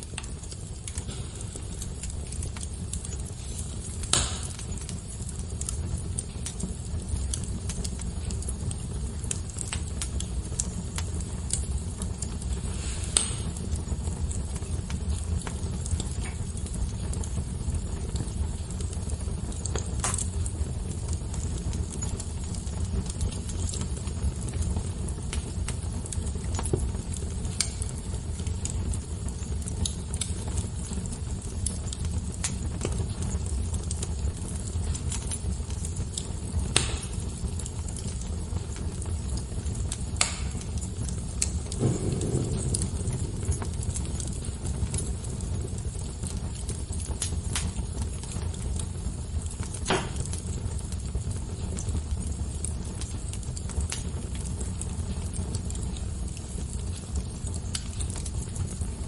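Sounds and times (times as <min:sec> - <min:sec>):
fire crackling: 0:00.0 - 0:59.0
low rumble: 0:41.6 - 0:45.9.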